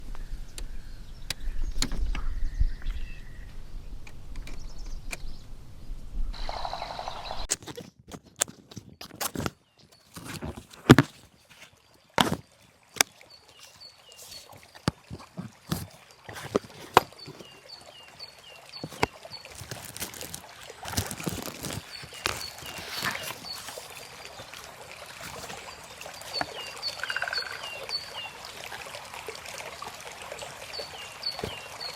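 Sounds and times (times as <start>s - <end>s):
trickling water: 7.5s - 31.9s
falling bird chirps: 12.2s - 24.6s.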